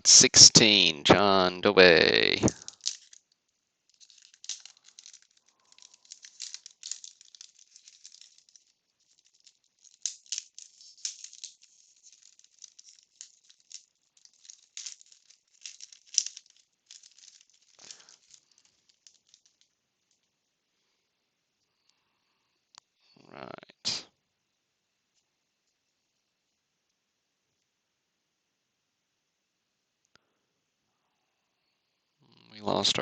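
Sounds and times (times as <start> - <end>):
wax paper crackling and rustling: 2.0 - 20.3.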